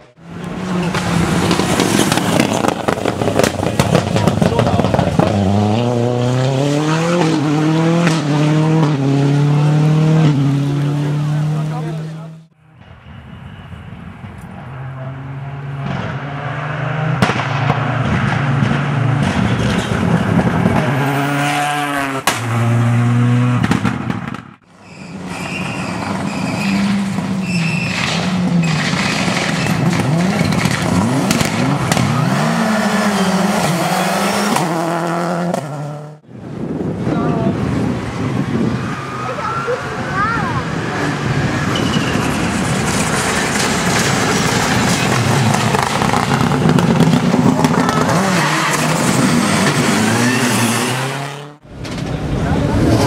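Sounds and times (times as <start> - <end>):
rally car engines revving: 0.0 - 12.6, 14.5 - 53.0
sharp exhaust pops: 27.8 - 32.2.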